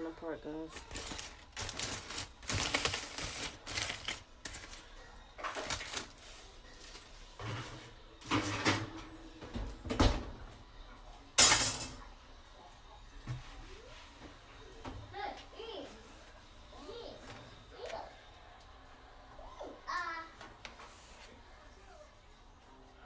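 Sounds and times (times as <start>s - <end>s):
utensils scraping and clinking dishes: 0.7s - 9.7s, 11.4s - 12.1s.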